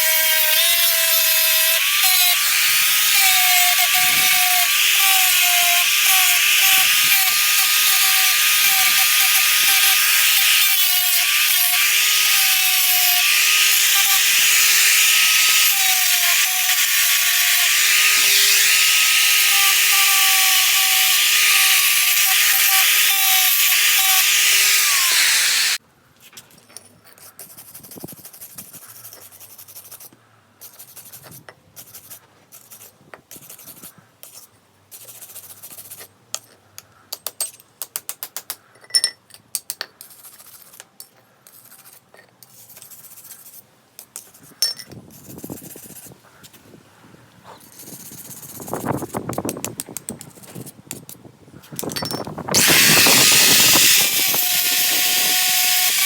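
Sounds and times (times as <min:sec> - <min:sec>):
power tool grinding: 0:00.0 - 0:25.8, 0:51.8 - 0:56.0
motor winding down: 0:16.4 - 0:25.8, 0:52.5 - 0:56.0.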